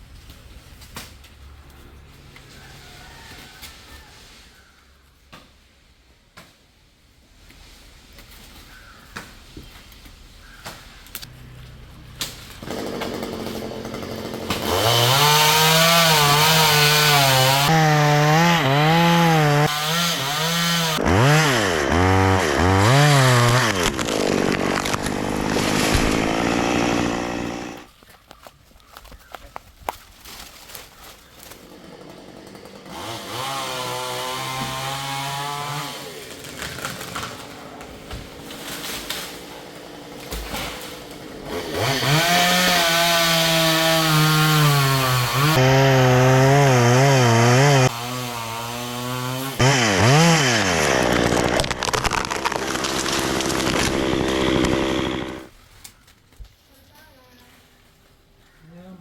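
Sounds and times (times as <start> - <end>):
chainsaw running: 12.6 - 27.9, 31.4 - 36.3, 41.4 - 55.5.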